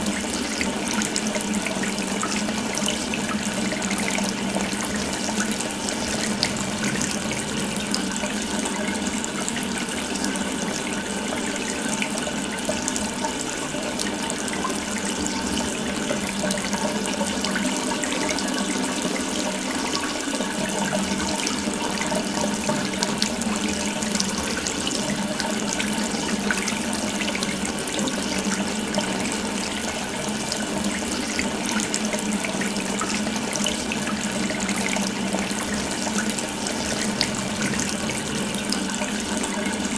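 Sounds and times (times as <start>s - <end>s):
tap water running into sink: 0.0s - 39.9s.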